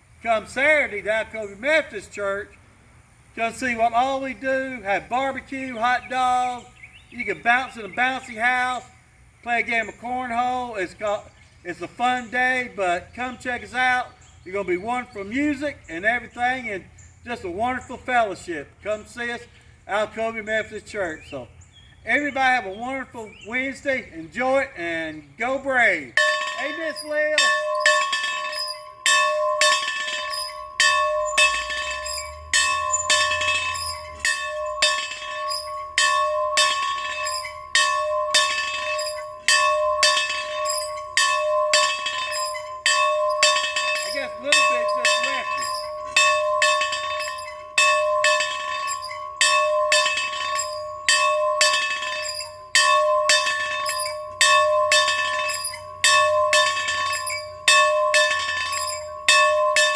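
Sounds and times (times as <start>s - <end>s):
bell ringing: 26.2s - 59.9s.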